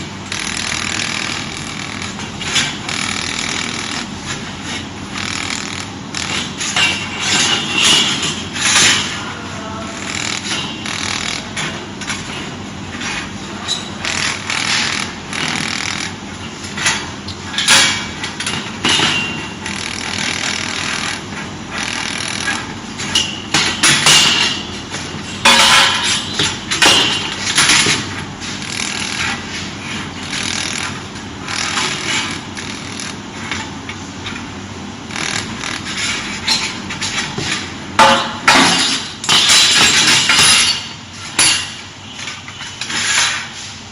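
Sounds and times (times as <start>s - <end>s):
welding machine crackling: 0.2s - 4.2s, 5.1s - 6.5s, 10.0s - 11.6s, 14.0s - 16.2s.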